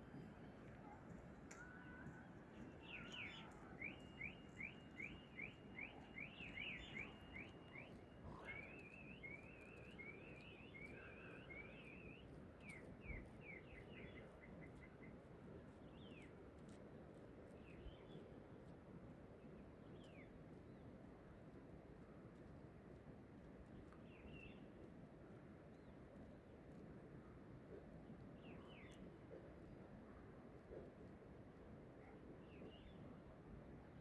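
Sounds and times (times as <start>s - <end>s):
songbird singing: 0.0s - 15.0s.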